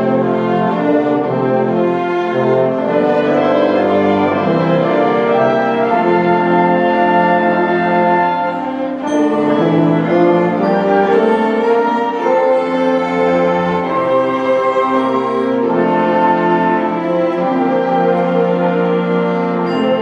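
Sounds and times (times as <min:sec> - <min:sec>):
orchestra bowed strings chords: 0:00.0 - 0:20.0.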